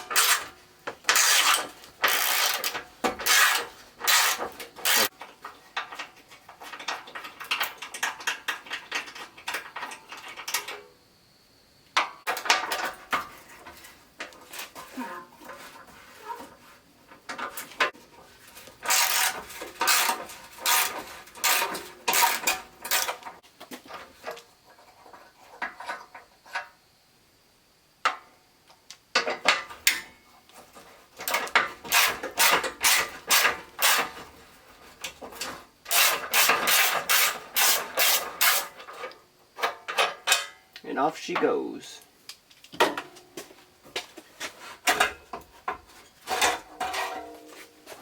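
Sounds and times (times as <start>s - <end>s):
socket ratchet rasping: 1.1s - 5.1s.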